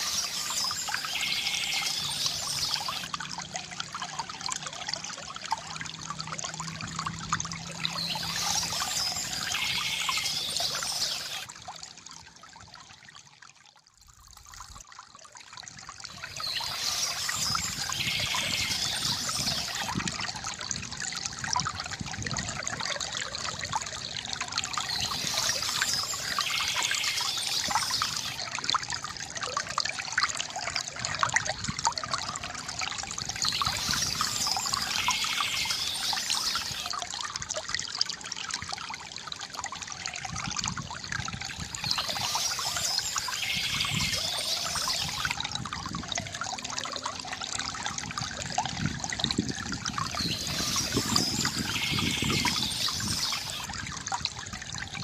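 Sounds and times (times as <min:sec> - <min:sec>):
fountain water trickling: 0:00.0 - 0:55.0.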